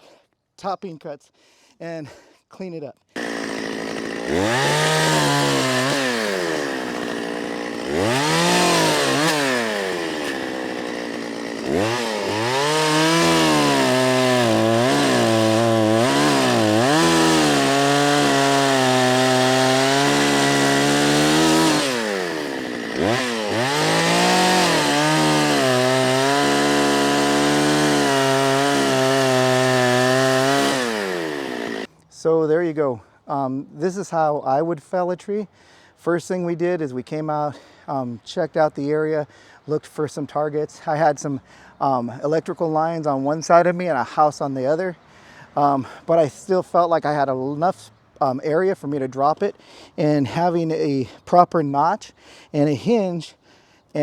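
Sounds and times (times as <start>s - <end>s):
chainsaw cutting through log: 3.2s - 31.9s.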